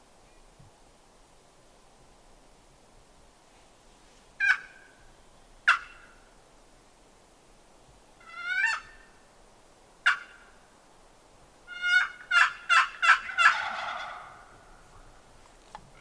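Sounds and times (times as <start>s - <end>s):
turkey gobble: 4.4s - 4.9s, 5.7s - 6.2s, 8.2s - 9.0s, 10.0s - 10.4s, 11.7s - 14.8s
wild turkeys calling: 4.4s - 6.3s, 8.2s - 9.2s, 10.0s - 10.6s, 11.7s - 15.2s.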